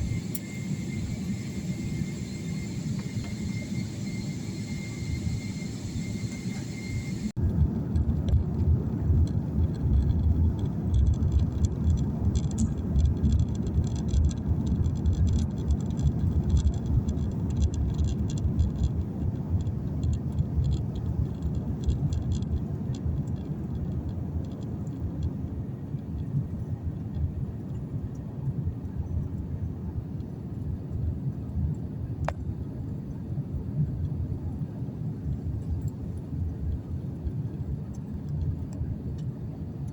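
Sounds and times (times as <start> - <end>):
rattly hiss: 0.0 - 7.3
low vehicle rumble: 0.0 - 30.0.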